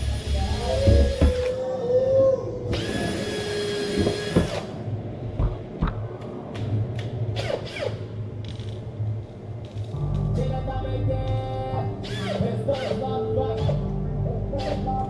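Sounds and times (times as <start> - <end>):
power tool running: 2.7 - 4.7.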